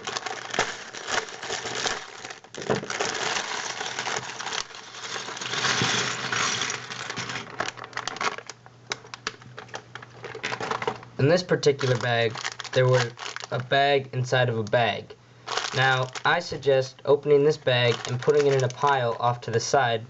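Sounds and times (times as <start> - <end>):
plastic bricks rattling: 0.0 - 8.5, 11.8 - 13.5, 15.5 - 16.3, 17.8 - 19.2
plastic bag crinkling: 0.0 - 13.7, 15.4 - 16.6, 17.5 - 19.7.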